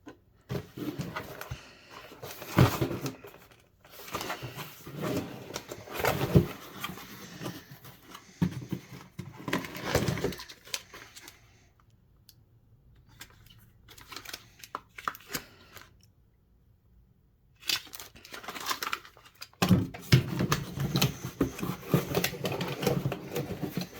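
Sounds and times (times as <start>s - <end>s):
packaging crinkling and rustling: 0.5s - 11.5s, 13.0s - 15.9s, 17.6s - 23.9s.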